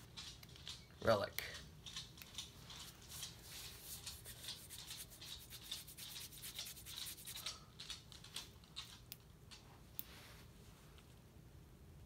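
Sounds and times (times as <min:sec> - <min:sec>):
faint rubbing and scratching: 0:02.6 - 0:07.9.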